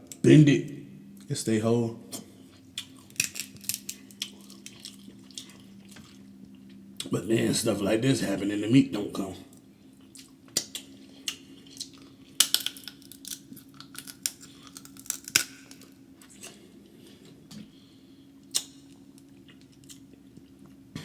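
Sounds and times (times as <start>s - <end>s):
crab shell cracking: 2.8s - 5.6s, 10.5s - 16.0s, 18.5s - 20.0s
shell snapping: 3.1s - 4.3s, 12.4s - 15.9s.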